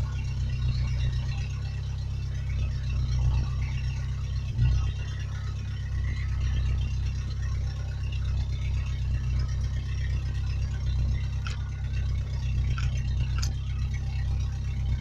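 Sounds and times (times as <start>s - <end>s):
vehicle engine running low: 0.0s - 15.0s.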